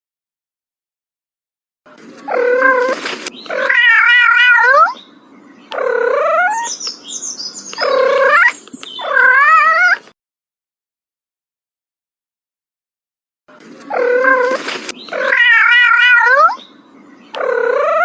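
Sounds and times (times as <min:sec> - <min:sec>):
cat meowing: 0:02.2 - 0:05.0, 0:05.7 - 0:06.7, 0:07.8 - 0:10.1, 0:13.9 - 0:16.7, 0:17.3 - 0:18.0.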